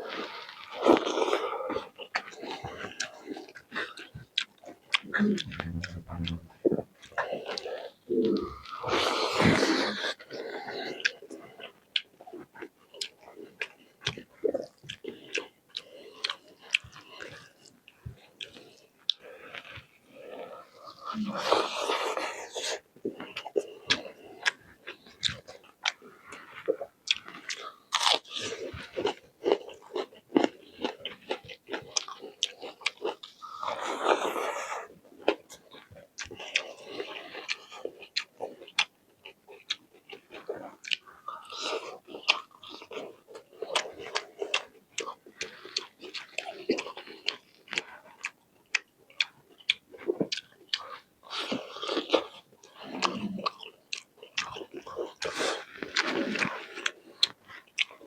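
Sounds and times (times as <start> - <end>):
person chewing crunchy food: 0.0 - 58.0
wet mouth clicks: 4.4 - 6.6.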